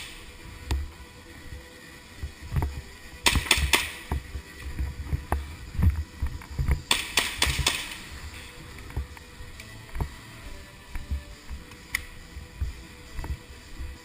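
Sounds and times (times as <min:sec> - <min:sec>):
low thumps and footsteps: 0:00.0 - 0:14.0
airsoft guns firing: 0:03.2 - 0:04.2, 0:06.8 - 0:08.1.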